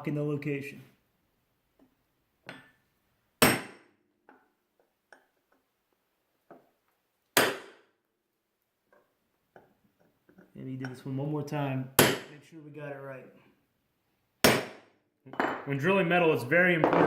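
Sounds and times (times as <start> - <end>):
hammer striking metal punch: 3.4 - 3.9, 7.4 - 7.8, 12.0 - 12.3, 14.4 - 14.8.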